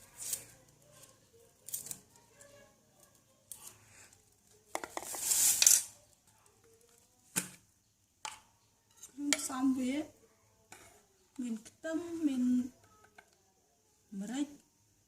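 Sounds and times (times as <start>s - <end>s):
rustling scrape: 5.0s - 5.9s.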